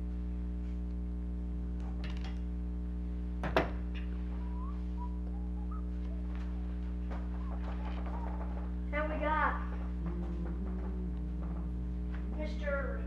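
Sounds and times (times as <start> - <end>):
low electrical hum: 0.0 - 13.0
faint high whistle-like tones: 4.3 - 8.4.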